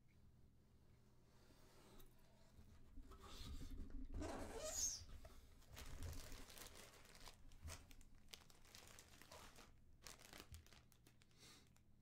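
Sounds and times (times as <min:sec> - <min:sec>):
small crackles: 0:05.7 - 0:11.9
packaging crinkling: 0:05.8 - 0:11.8.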